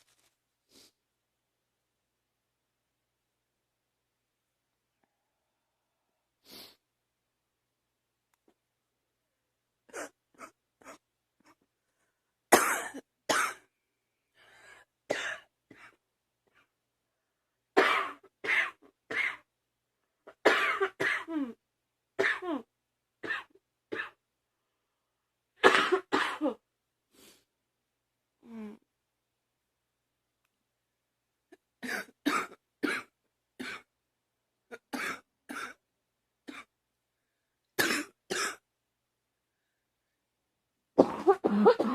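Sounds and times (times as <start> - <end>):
girl coughing: 12.5 - 13.6, 20.4 - 21.6, 25.6 - 26.6, 31.8 - 33.9, 37.8 - 38.6, 41.0 - 41.9.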